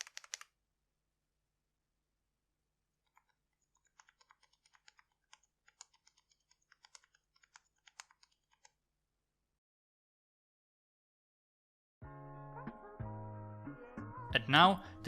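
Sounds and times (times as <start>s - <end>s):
mechanical keyboard typing: 0.0s - 0.5s, 3.1s - 8.8s.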